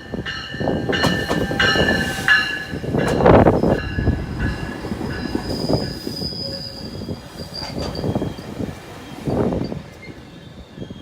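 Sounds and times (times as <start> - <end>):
locomotive squealing: 0.5 - 11.0
rough rumble: 1.1 - 8.0.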